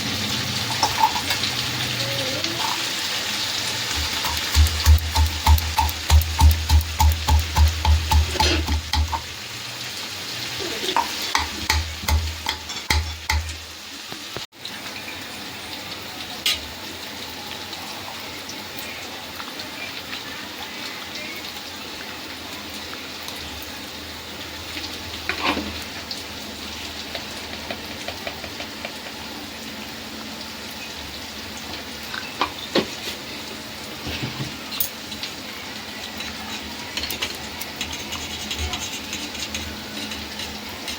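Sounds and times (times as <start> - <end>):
food sizzling in a pan: 0.0 - 40.9
spatula scraping a pan: 8.1 - 8.8, 12.4 - 13.2, 25.2 - 25.9, 36.0 - 40.9.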